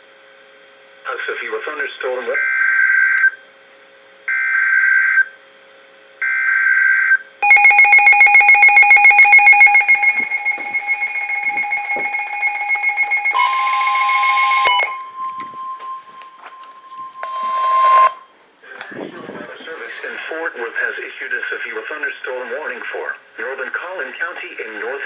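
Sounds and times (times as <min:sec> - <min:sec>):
pulsing electronic alert tone: 0:07.4 - 0:18.2
second electronic tone: 0:07.4 - 0:18.3.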